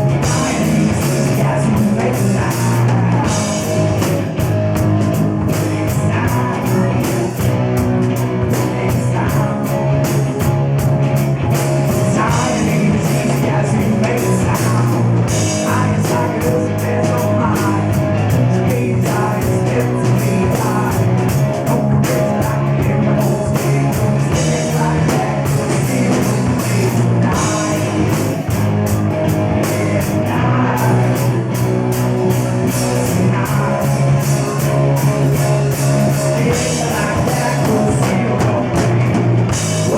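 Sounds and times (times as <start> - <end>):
live rock band playing: 0.0 - 39.9.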